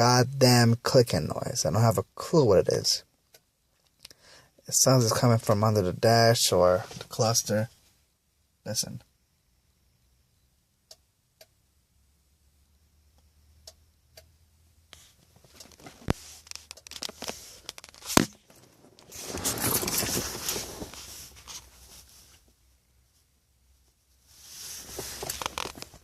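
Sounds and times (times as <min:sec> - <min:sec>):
faint sharp relay clicks: 0:13.1 - 0:14.4
crackling rustling handling noise: 0:15.0 - 0:22.5, 0:24.4 - 0:26.0.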